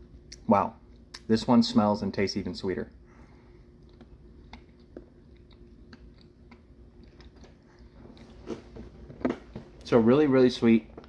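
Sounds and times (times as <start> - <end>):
low steady hum: 0.0 - 11.0
wet chewing mouth clicks: 3.7 - 8.6.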